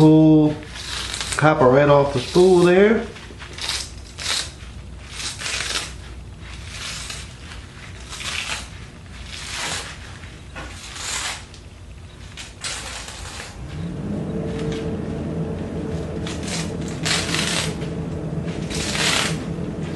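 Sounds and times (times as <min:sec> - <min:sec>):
wire rustling off coil spool: 0:00.6 - 0:19.9.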